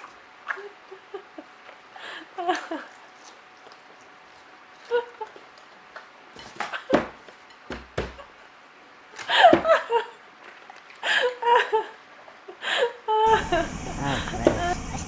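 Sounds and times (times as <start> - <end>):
person laughing: 13.3 - 15.0.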